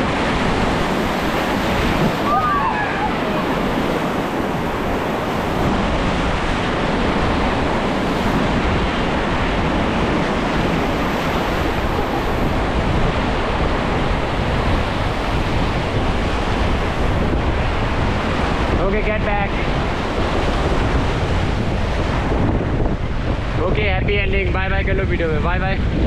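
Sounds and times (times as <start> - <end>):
river rapids roaring: 0.0 - 18.8
wind buffeting microphone: 0.0 - 26.0.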